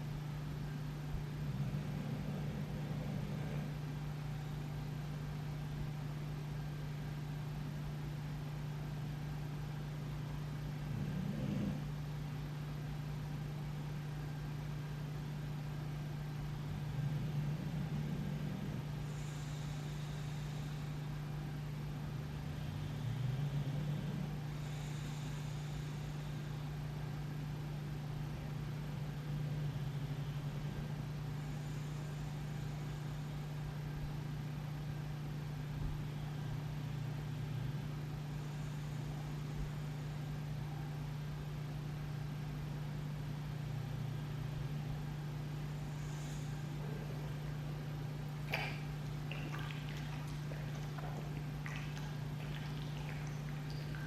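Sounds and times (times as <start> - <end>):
steady low hum: 0.0 - 54.0
dog snoring: 1.1 - 4.6, 10.6 - 12.2, 16.4 - 21.3, 22.1 - 26.8, 28.4 - 33.7, 45.6 - 54.0.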